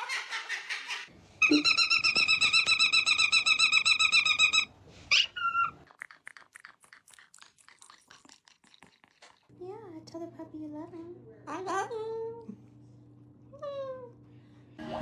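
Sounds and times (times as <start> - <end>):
parrot calling: 0.0 - 5.9.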